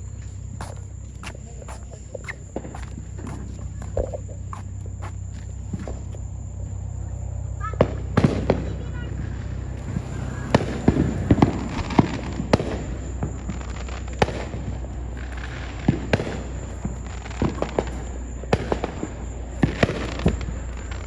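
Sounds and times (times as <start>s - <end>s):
steady low rumble: 0.0s - 21.0s
fireworks bangs and pops: 0.1s - 6.3s, 7.9s - 21.0s.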